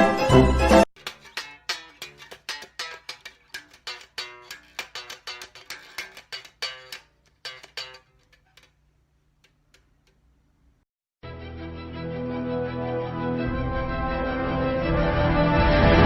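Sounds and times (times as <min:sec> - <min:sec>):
plucked string instrument: 0:00.0 - 0:08.8.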